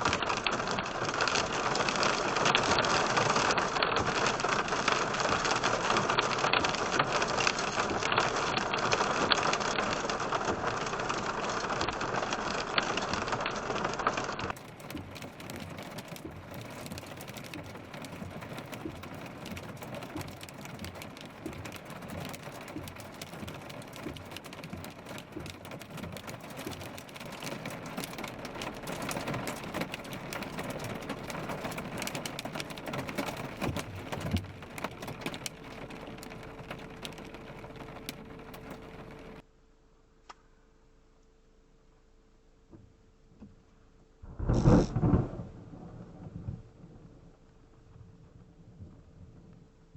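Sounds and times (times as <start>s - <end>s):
rain and hail pelting a car: 0.0s - 39.5s.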